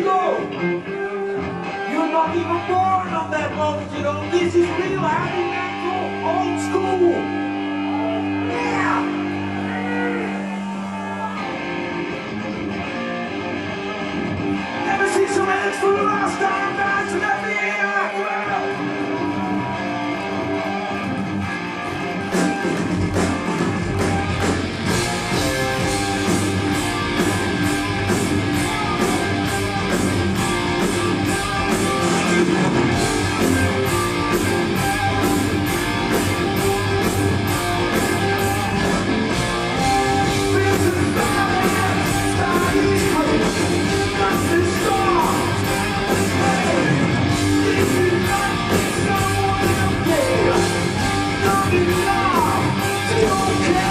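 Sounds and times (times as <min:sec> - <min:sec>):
heavy metal band playing live: 0:00.0 - 0:53.9
steady drum beat: 0:22.2 - 0:53.9.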